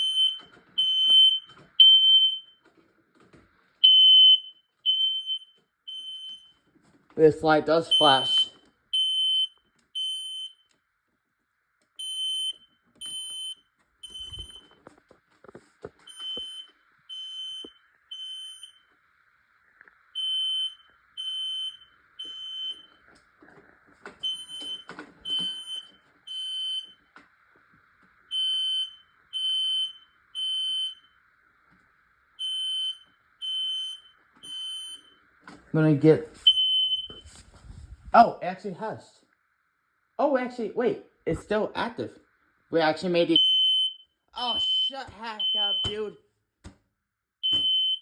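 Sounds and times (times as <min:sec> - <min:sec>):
smoke detector beeping: 0:00.0 - 0:02.6, 0:03.8 - 0:06.6, 0:07.7 - 0:10.7, 0:12.0 - 0:14.8, 0:16.0 - 0:18.9, 0:20.1 - 0:23.0, 0:24.2 - 0:27.0, 0:28.3 - 0:31.2, 0:32.4 - 0:35.2, 0:36.0 - 0:37.5, 0:43.1 - 0:46.2, 0:47.4 - 0:48.0.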